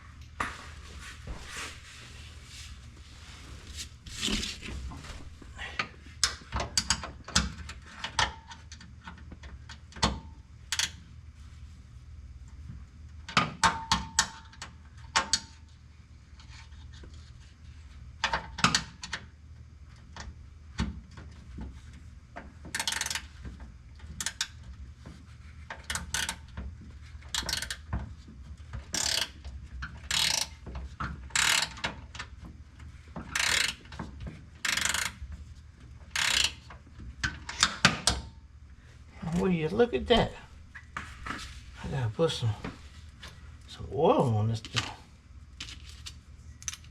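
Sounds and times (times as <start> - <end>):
ratchet wrench clicking: 22.8 - 23.3, 27.4 - 27.8, 28.9 - 29.3, 30.1 - 30.5, 31.3 - 31.8, 33.3 - 33.8, 34.6 - 35.2, 36.1 - 36.7.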